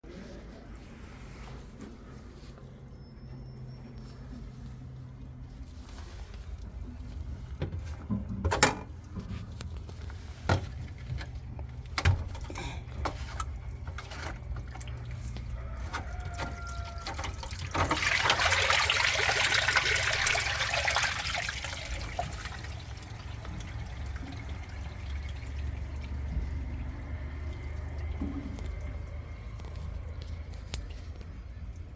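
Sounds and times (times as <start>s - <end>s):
washing machine humming: 0.0s - 31.9s
water rushing: 16.0s - 29.5s.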